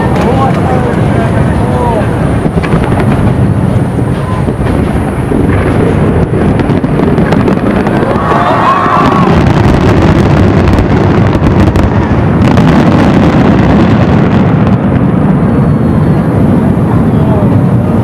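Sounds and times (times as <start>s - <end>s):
fireworks booming and crackling: 0.0s - 18.0s
whistling rockets: 4.0s - 17.4s.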